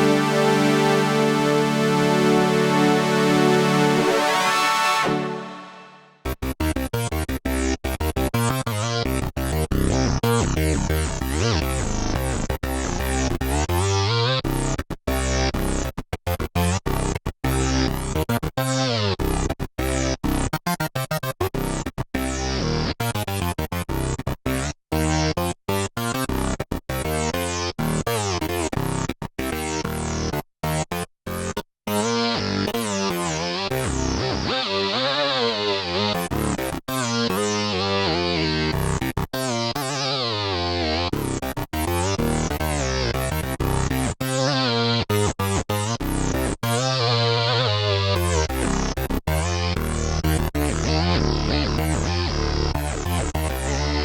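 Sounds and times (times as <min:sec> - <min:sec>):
plucky synthesizer notes: 0:00.0 - 0:06.3.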